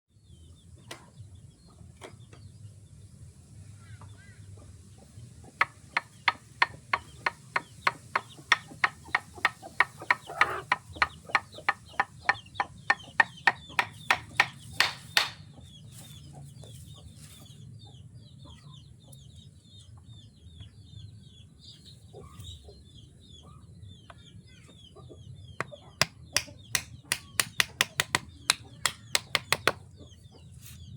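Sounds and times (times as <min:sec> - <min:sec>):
hammering on wood: 0:05.6 - 0:15.5, 0:25.6 - 0:29.8.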